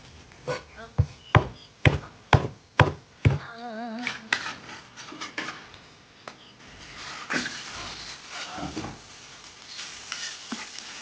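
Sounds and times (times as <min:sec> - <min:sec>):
knife chopping on cutting board: 0:01.4 - 0:03.4
wavering voice-like tone: 0:03.4 - 0:04.4
kitchen utensils clattering: 0:04.2 - 0:05.7.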